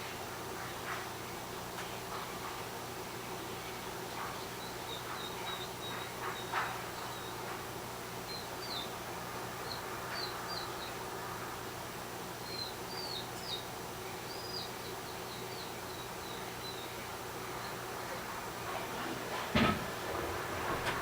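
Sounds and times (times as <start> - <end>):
small bird chirping: 12.4 - 16.9.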